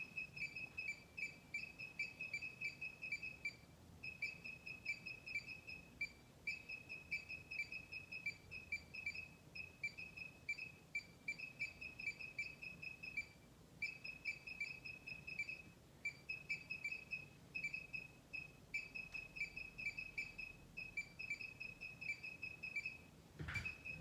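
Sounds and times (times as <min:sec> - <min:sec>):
rapid electronic beeping: 0:00.0 - 0:24.0.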